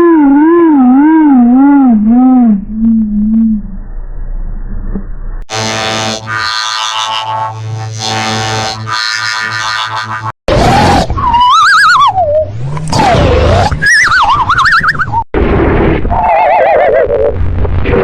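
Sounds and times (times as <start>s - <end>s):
wobbling whistles: 10.9s - 12.6s, 13.5s - 15.3s.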